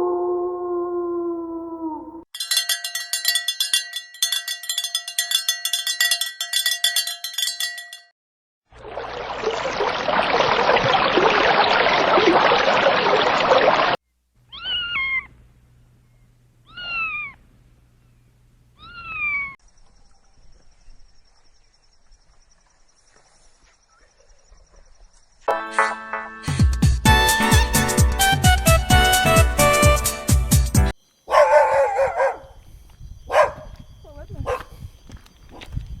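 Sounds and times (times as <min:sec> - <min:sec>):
cat-like meows: 0:14.5 - 0:15.3, 0:16.7 - 0:17.4.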